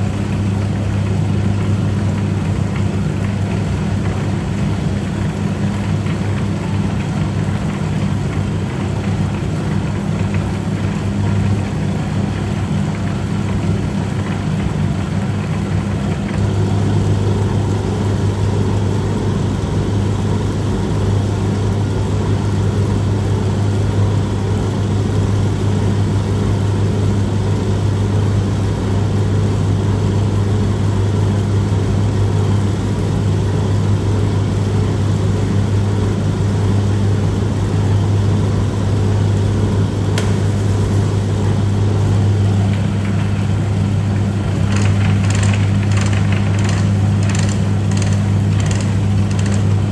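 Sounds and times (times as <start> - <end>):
noodle-cutting machine humming: 11.4 - 49.9.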